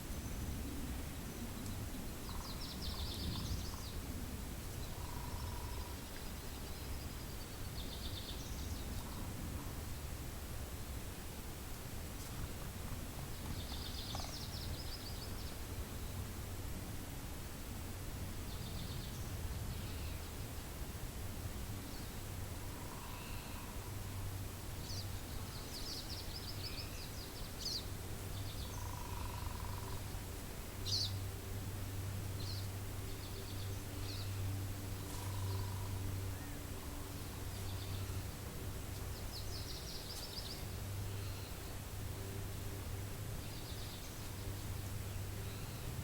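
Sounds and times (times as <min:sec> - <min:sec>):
low wind rumble: 0:00.0 - 0:46.0
birds chirping and trilling: 0:02.2 - 0:04.0, 0:13.3 - 0:15.6, 0:24.8 - 0:30.1, 0:32.4 - 0:38.4.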